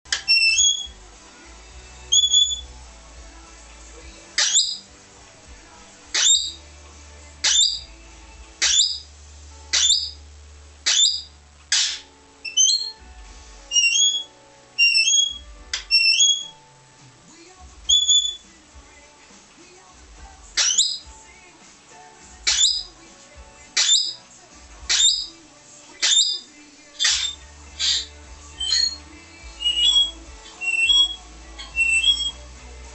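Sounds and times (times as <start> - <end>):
parrot shrieks: 0.2 - 0.9, 2.1 - 2.6, 4.4 - 4.8, 6.2 - 6.6, 7.4 - 7.8, 8.6 - 9.0, 9.7 - 10.2, 10.8 - 13.0, 13.7 - 16.5, 17.9 - 18.4, 20.6 - 21.0, 22.5 - 22.9, 24.9 - 25.3, 26.0 - 29.0, 29.6 - 32.4
parrot two-note whistles: 13.7 - 16.5.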